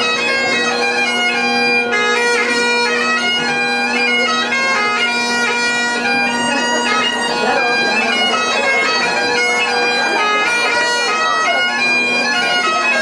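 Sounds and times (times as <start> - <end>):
steady held drone: 0.0 - 12.9
reedy wind melody: 4.2 - 12.8.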